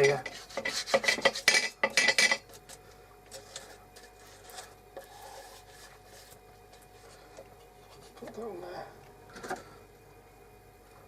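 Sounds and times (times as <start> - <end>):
faint rubbing strokes on wood: 0.0 - 1.6, 3.4 - 8.4.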